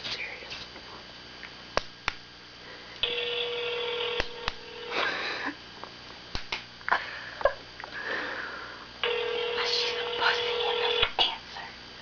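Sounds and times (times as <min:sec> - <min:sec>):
phone ringback tone: 0:03.0 - 0:05.1, 0:09.0 - 0:11.1.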